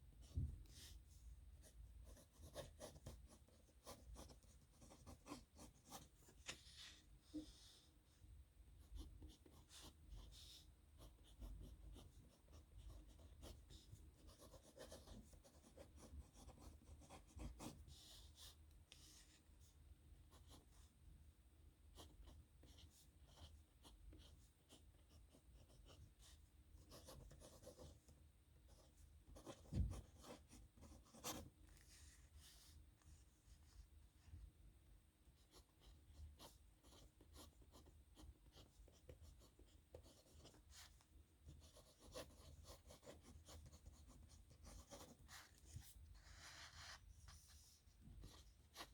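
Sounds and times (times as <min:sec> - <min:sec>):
pen scratching on paper: 0:02.0 - 0:06.8, 0:08.9 - 0:19.2, 0:22.0 - 0:28.0, 0:28.7 - 0:31.5, 0:35.4 - 0:48.9
soft thump: 0:29.7 - 0:30.1.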